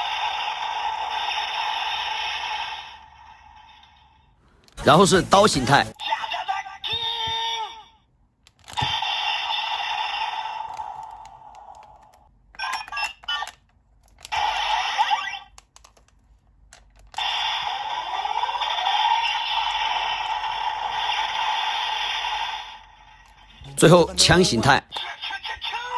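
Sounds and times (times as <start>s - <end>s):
toy button clicks: 12.6s - 14.3s
toy sword electronic sound effects: 17.2s - 22.9s.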